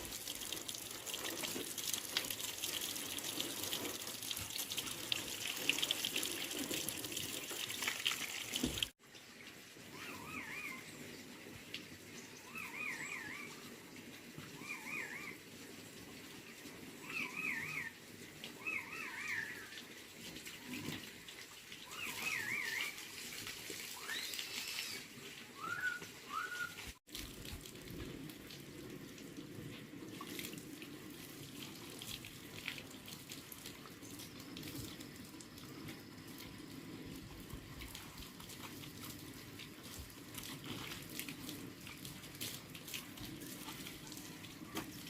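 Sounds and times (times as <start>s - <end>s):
water running: 0.0s - 9.2s.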